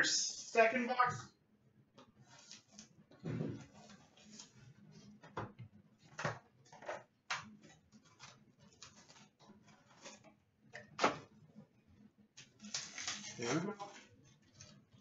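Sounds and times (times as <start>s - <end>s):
wrapper and cardboard crinkles: 12.4s - 15.0s.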